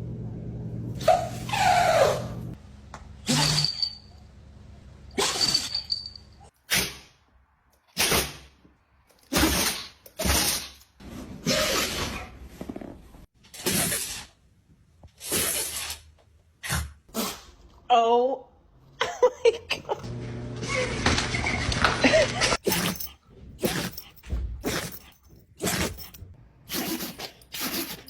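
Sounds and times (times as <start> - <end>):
dog sneezing: 6.7 - 7.1, 8.0 - 8.5, 9.3 - 10.8, 15.2 - 16.0, 22.6 - 28.0.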